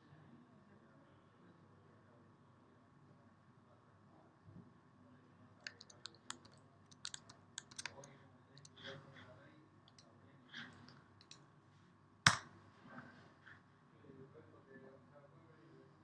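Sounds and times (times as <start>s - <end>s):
keyboard key taps: 5.7s - 8.1s
mouse clicks: 5.7s - 8.1s.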